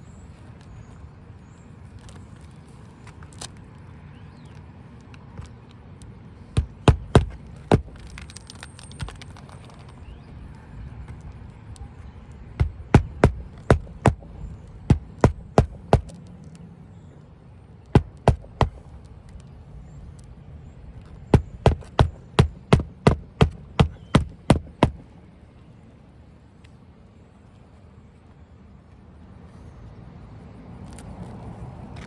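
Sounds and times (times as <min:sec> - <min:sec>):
hammer driving nails: 0:06.6 - 0:08.1, 0:12.6 - 0:16.1, 0:18.0 - 0:18.8, 0:21.4 - 0:25.0.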